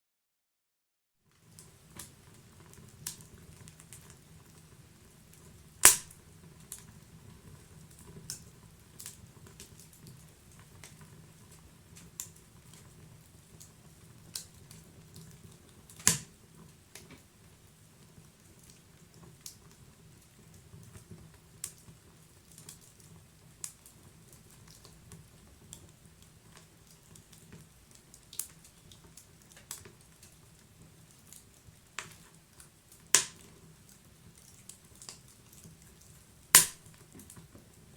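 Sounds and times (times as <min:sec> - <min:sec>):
wood crackling and popping: 0:01.4 - 0:37.9.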